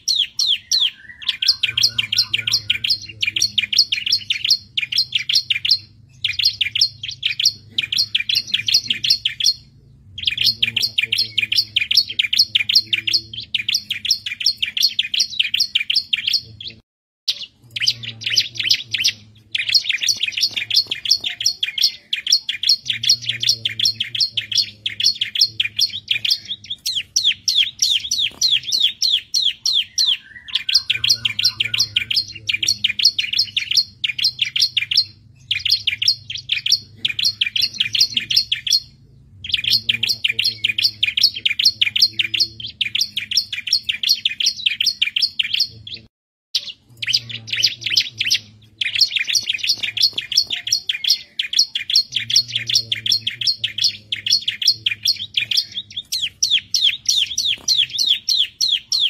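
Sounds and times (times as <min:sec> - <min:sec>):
bird singing high chirps: 0:00.0 - 0:59.0
faint low hum: 0:01.6 - 0:16.8.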